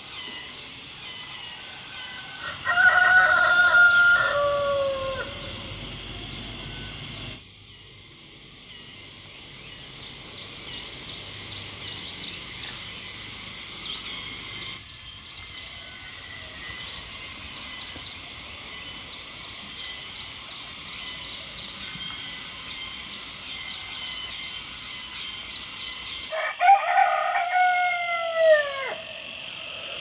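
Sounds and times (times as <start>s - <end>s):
birds chirping: 0.0s - 26.5s
steady high-pitched hum: 3.4s - 26.3s.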